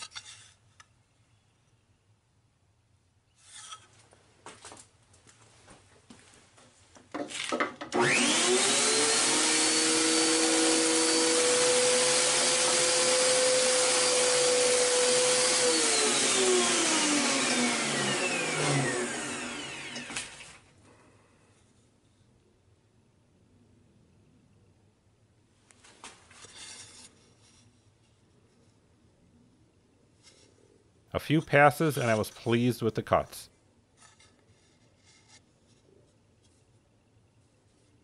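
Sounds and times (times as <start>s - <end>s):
jointer planer motor running: 7.9s - 20.6s
machine winding down: 7.9s - 20.6s.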